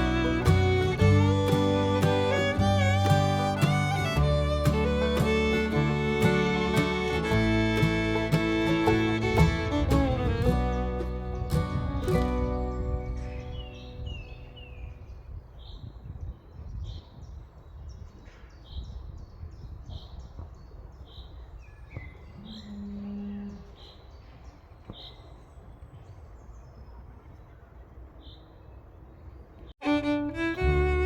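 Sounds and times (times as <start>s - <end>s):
low steady call: 0.0s - 13.2s
birds chirping: 0.0s - 31.0s
low rumble of wind: 0.0s - 31.0s.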